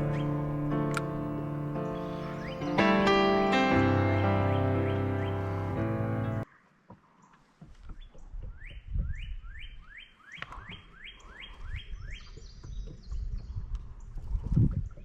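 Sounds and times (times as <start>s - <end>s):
songbird whistled notes: 1.9s - 3.0s.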